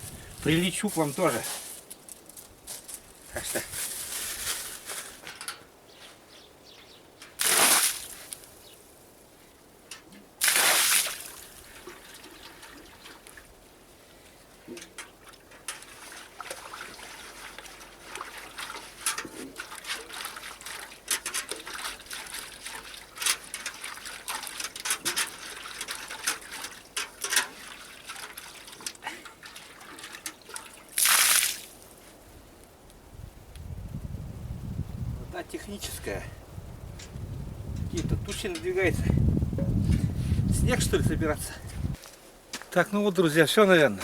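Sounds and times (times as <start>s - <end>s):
water pouring and splashing: 7.4s - 8.5s, 10.4s - 13.6s, 14.6s - 31.9s
water trickling and dripping: 9.9s - 13.6s, 14.6s - 31.8s.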